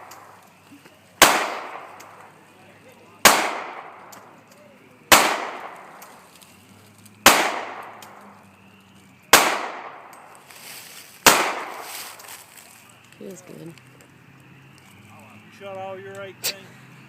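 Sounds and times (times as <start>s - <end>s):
pistol shots: 1.2s - 2.3s, 3.2s - 4.4s, 5.1s - 6.2s, 7.2s - 8.3s, 9.3s - 10.3s, 11.2s - 12.2s.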